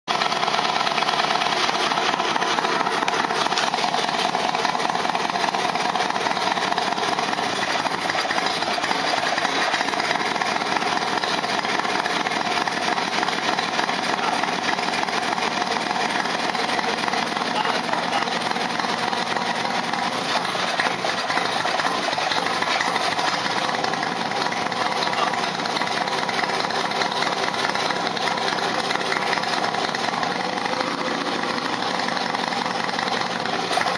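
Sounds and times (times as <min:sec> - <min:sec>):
motorcycle engine idling: 0:00.1 - 0:33.9.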